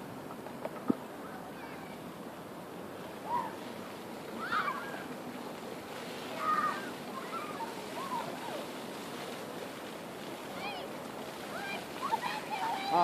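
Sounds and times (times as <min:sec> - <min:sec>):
fountain water falling: 0:00.0 - 0:13.0
children shouting: 0:03.2 - 0:03.6, 0:04.3 - 0:05.1, 0:06.3 - 0:08.6.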